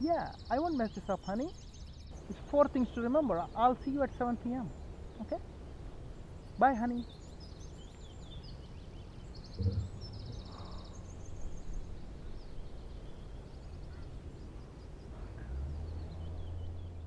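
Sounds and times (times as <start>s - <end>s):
small birds chirping: 0.0s - 17.0s
low rumble: 9.3s - 17.0s.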